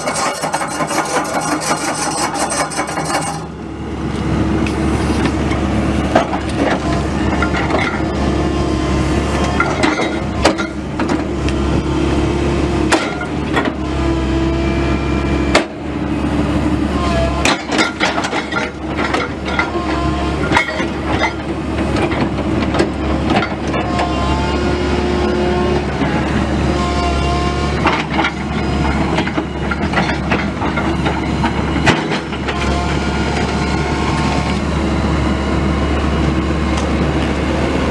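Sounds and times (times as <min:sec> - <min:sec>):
excavator engine drone: 0:00.0 - 0:37.9
metallic knocks and clanks: 0:27.8 - 0:32.6.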